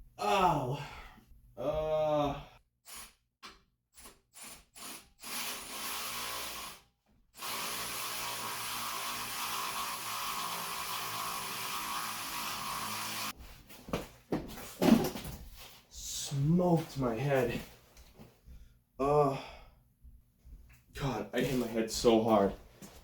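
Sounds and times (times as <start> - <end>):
power tool running: 4.4 - 6.8, 7.4 - 13.4.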